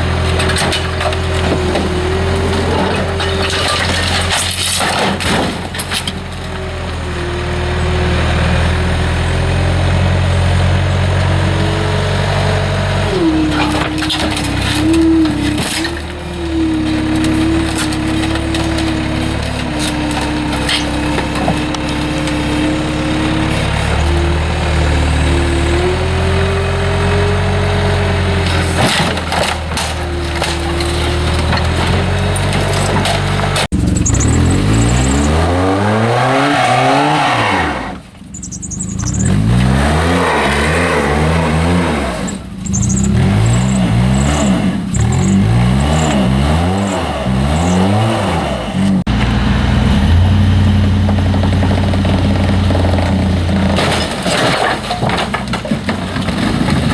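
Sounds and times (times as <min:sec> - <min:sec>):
sharp knocks and rattles: 0:00.0 - 0:06.7, 0:50.8 - 0:56.9
pickup truck engine under load: 0:00.0 - 0:56.9.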